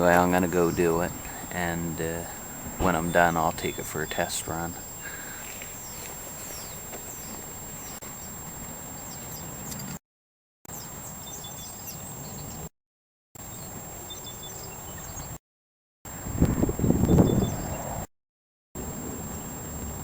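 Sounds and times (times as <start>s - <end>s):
steady background hiss: 0.0s - 9.9s
small birds chirping: 0.0s - 10.0s, 10.7s - 12.7s, 13.5s - 15.4s, 17.0s - 17.8s.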